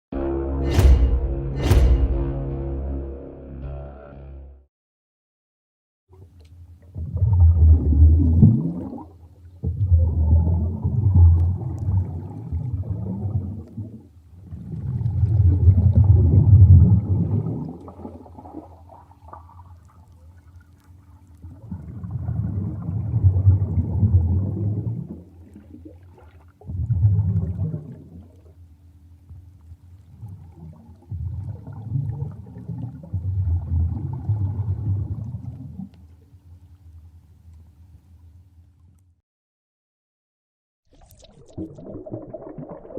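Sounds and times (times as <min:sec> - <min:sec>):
underwater gurgling water surges: 0:06.8 - 0:28.6, 0:30.0 - 0:36.0, 0:40.9 - 0:42.9
faint steady hum: 0:15.9 - 0:39.1.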